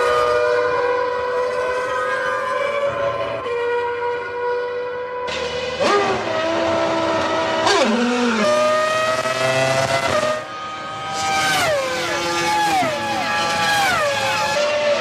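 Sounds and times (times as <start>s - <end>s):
racing car engine revving: 4.8s - 15.0s.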